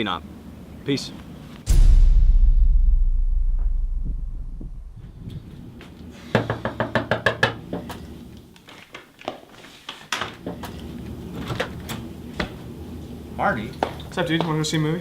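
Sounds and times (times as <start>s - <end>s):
thuds: 1.7s - 5.7s
rapid knocking on a door: 6.4s - 7.6s.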